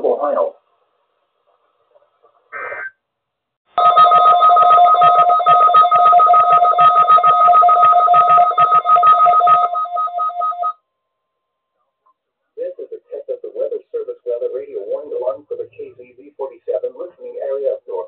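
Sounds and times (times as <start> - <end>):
two-pitch alarm tone: 3.8 - 10.8.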